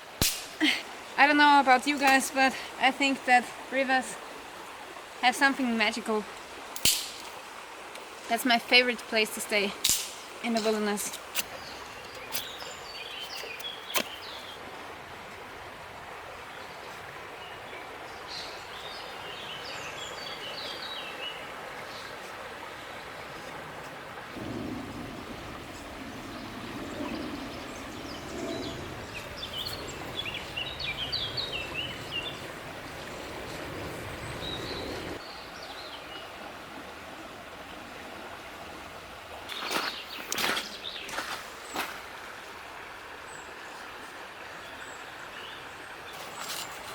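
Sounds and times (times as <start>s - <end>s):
river flowing: 0.0s - 46.9s
small birds chirping: 10.5s - 14.6s, 25.7s - 32.5s
deeper rushing: 24.3s - 30.2s.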